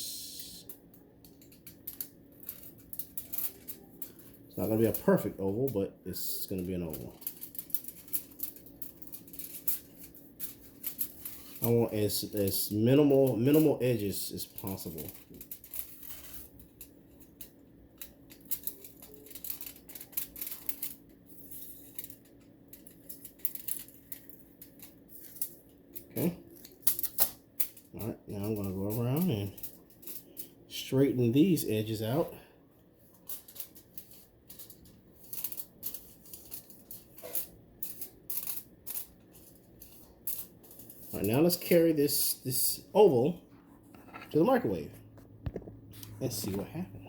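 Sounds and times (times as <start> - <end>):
faint steady hum: 0.0 - 47.0
scissors cutting foil: 1.0 - 5.8, 6.4 - 30.5, 33.2 - 41.5.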